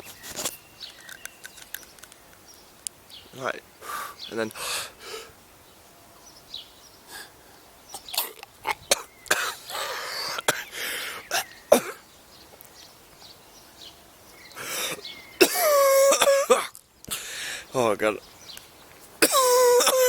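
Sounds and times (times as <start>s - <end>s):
rasping breaths: 3.8s - 5.3s, 17.1s - 17.7s
man coughing: 11.3s - 12.0s, 15.4s - 16.7s, 19.2s - 20.0s.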